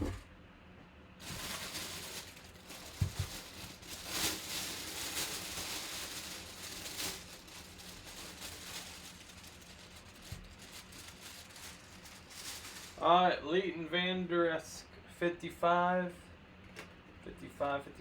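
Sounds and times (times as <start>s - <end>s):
packaging rustling: 1.2s - 13.0s.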